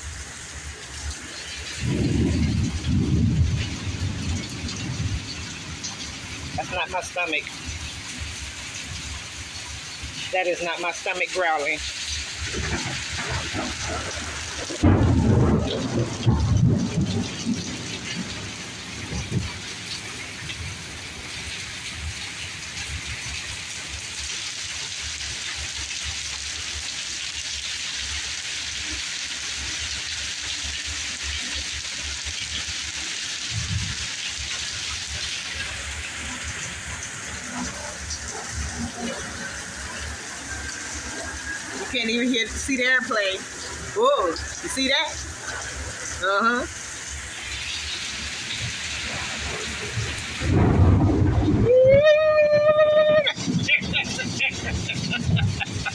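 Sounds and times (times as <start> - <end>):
thunder rumbling: 0.0 - 24.1, 33.5 - 42.7, 43.4 - 55.9
hard rain pouring: 0.0 - 55.9.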